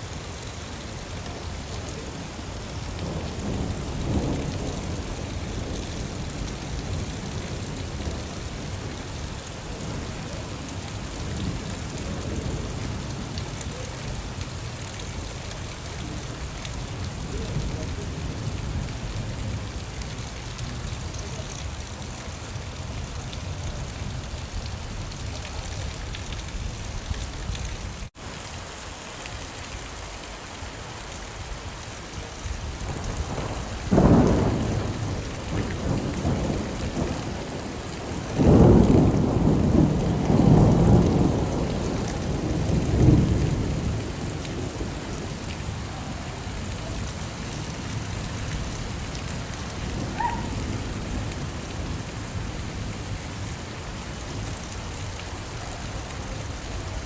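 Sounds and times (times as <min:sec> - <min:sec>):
steady rain falling: 0:00.0 - 0:57.0
thunder rumbling: 0:02.8 - 0:09.1, 0:32.7 - 0:53.4.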